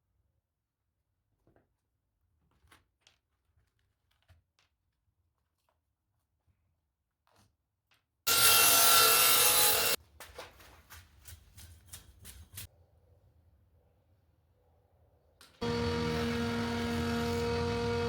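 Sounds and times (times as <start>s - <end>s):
tool cutting wood: 8.3s - 10.0s, 15.6s - 18.0s.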